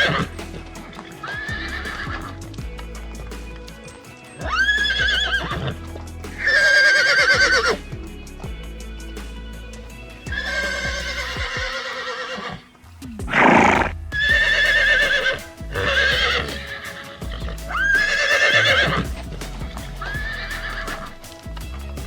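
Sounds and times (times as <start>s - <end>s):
background music: 0.0s - 22.0s
horse whinnying: 6.4s - 7.8s, 10.3s - 19.1s.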